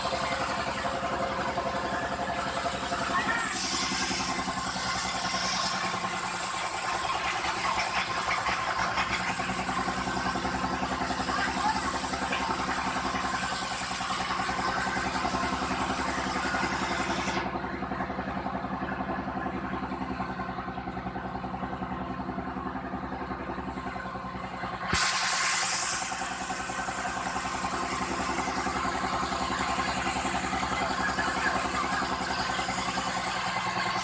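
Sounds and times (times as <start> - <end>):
harsh hissing noise: 0.0 - 17.5, 24.9 - 29.1
machinery engine running: 0.0 - 34.0.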